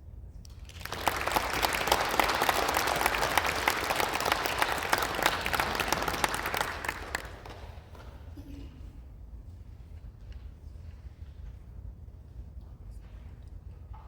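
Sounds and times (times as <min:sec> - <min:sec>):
audience applauding: 0:00.6 - 0:08.1.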